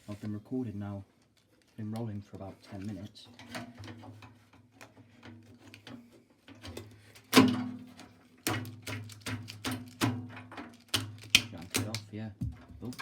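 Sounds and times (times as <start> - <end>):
tools knocking on metal: 12.4 - 13.0.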